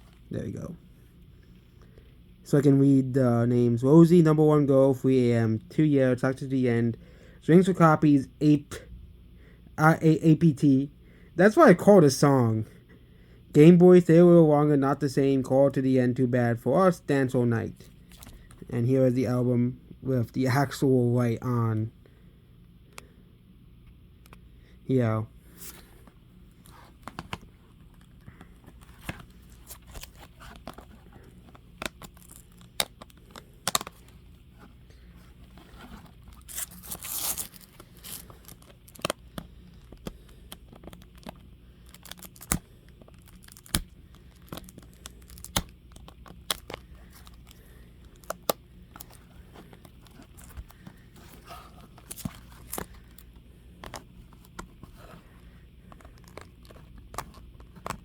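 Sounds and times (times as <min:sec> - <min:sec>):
plastic wrap clicking and crinkling: 0:28.8 - 0:34.2, 0:36.3 - 0:49.2, 0:55.8 - 0:58.0
plastic wrap tearing: 0:36.3 - 0:39.2, 0:40.8 - 0:49.1.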